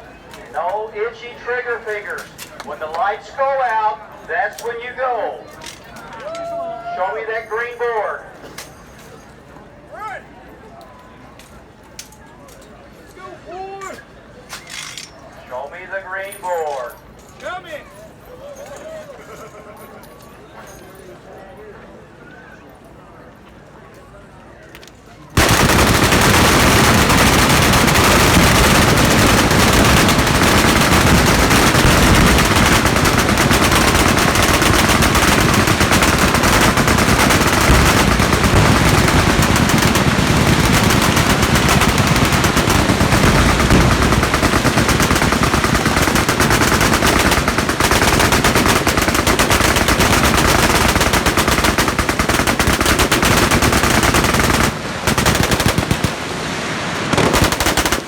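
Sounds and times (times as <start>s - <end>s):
machine guns firing: 25.4s - 56.4s, 57.1s - 58.0s.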